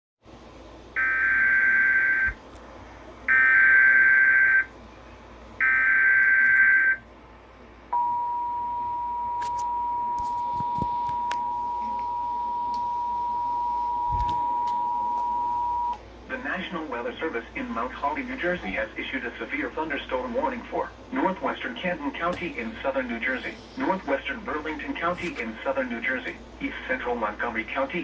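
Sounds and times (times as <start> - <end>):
steady two-tone alert signal: 1.0 - 2.4, 3.3 - 4.7, 5.6 - 7.0.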